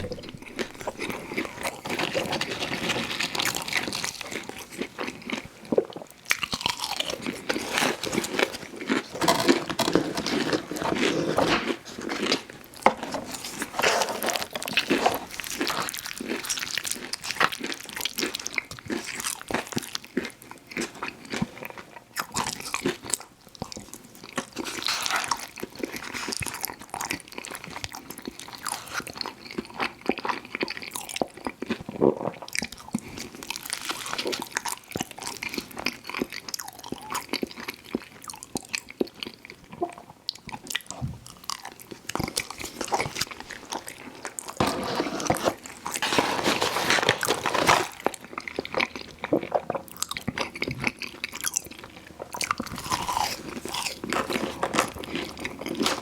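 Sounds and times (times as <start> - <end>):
person chewing crunchy food: 0.0 - 56.0.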